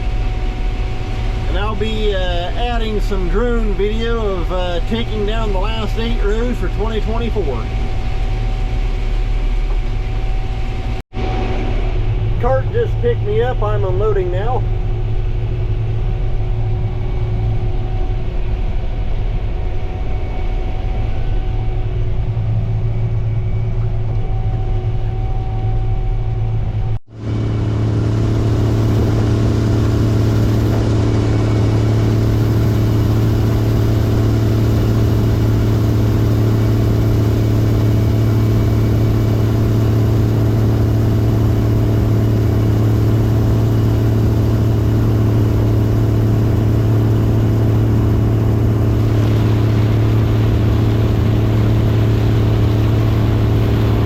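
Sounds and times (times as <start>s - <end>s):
harvester engine humming: 22.0s - 54.0s.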